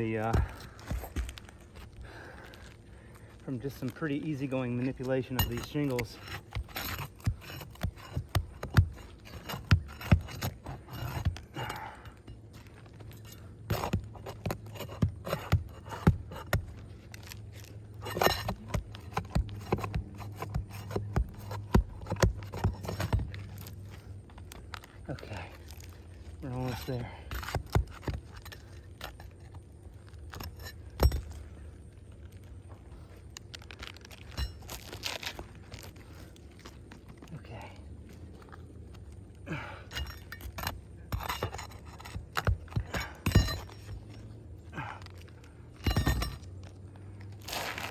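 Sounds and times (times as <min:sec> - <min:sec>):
shingles scraping: 0:03.6 - 0:11.8, 0:12.4 - 0:31.8, 0:32.7 - 0:37.2, 0:39.9 - 0:44.4, 0:45.6 - 0:47.9
shingles clicking and knocking: 0:03.6 - 0:31.6, 0:39.5 - 0:47.9
clicks and metallic clinks: 0:05.0 - 0:08.2.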